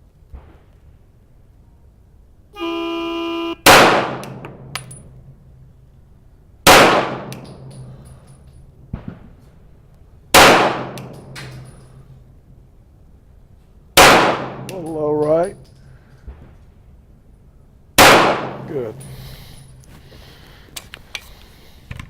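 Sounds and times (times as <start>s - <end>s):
buzzer start tone: 2.6s - 3.6s
pistol shots: 3.6s - 4.4s, 6.7s - 7.5s, 10.3s - 11.2s, 14.0s - 14.7s, 18.0s - 18.6s.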